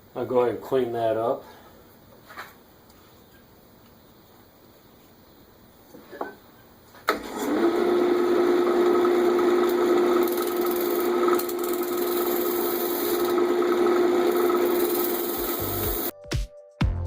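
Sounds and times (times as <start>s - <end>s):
wood lathe running: 7.1s - 16.1s
turning tool scraping wood: 9.7s - 13.5s.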